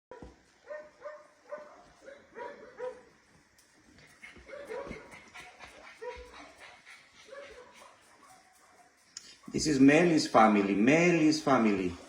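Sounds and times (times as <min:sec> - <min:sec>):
puppies yelping: 0:04.1 - 0:08.8.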